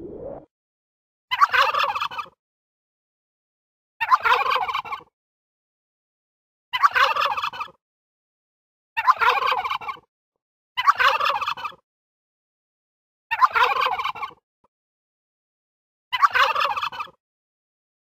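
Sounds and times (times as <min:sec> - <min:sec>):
turkey gobbling: 0:01.5 - 0:02.3, 0:04.2 - 0:05.1, 0:06.8 - 0:07.7, 0:09.1 - 0:10.0, 0:10.9 - 0:11.8, 0:13.4 - 0:14.4, 0:16.2 - 0:17.2.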